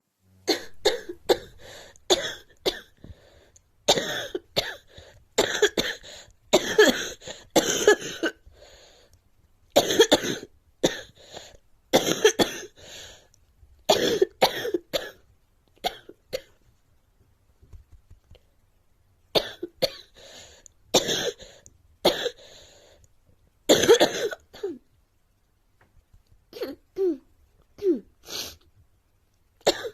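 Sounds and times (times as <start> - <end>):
girl coughing: 0.5 - 2.9, 3.9 - 6.0, 6.6 - 8.4, 9.8 - 11.1, 12.0 - 12.8, 13.9 - 15.2, 21.0 - 21.4, 23.7 - 24.8, 26.6 - 27.2, 29.7 - 29.9.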